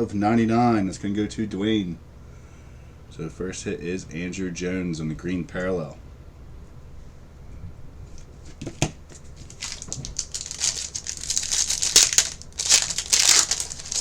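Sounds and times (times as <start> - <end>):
plastic wrapper crinkling and tearing: 9.1 - 14.0.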